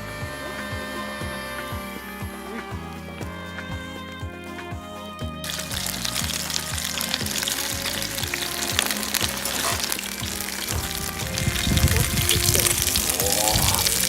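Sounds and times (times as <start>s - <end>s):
background music with beat: 0.0s - 14.0s
patties sizzling in a pan: 5.5s - 14.0s.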